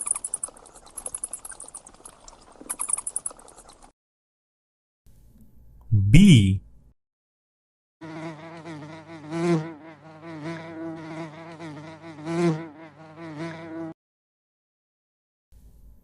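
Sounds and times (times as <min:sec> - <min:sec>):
bee buzzing: 0:08.0 - 0:14.0.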